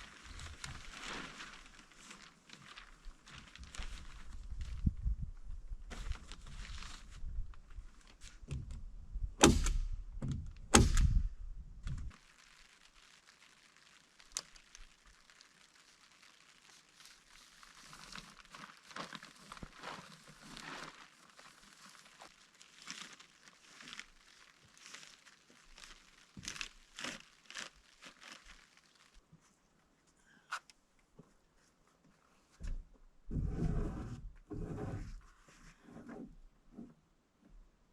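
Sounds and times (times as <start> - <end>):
rustling and crackling: 0.0 - 8.8, 11.8 - 29.7.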